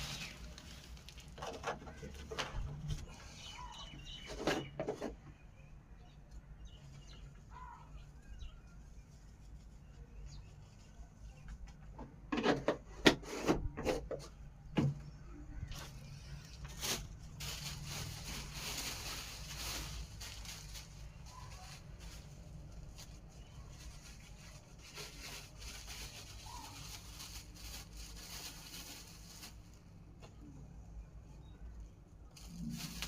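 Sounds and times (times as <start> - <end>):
bird calls: 3.2 - 8.8.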